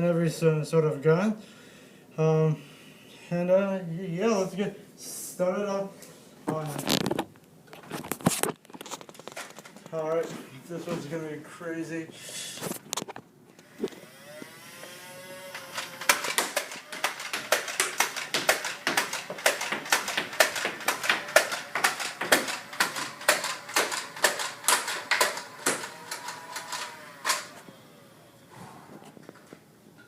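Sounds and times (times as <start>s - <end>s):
toy blaster motor whine: 13.6s - 18.8s, 21.2s - 28.5s
rapid dart shots: 15.8s - 27.5s.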